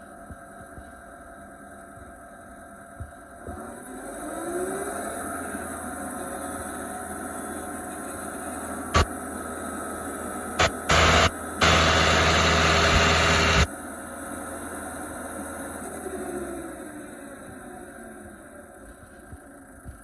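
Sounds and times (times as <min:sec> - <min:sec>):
loud rushing bursts: 0:10.6 - 0:13.7
stump grinder engine running: 0:10.6 - 0:13.7.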